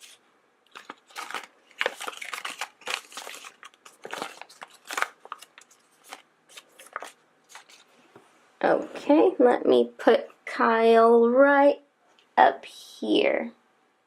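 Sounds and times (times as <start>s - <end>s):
packaging crinkling and clicking: 0.0s - 7.9s.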